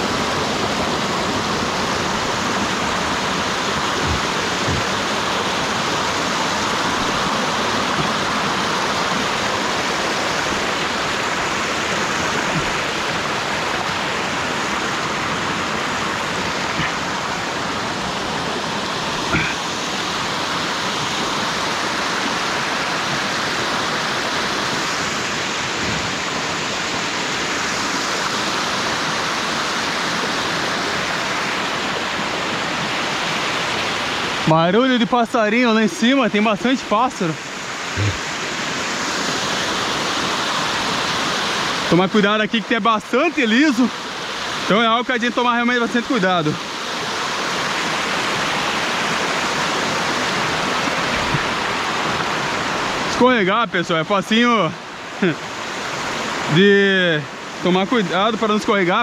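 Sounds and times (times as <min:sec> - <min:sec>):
stream rushing water: 0:00.0 - 0:59.0
soft knocks: 0:04.0 - 0:05.0.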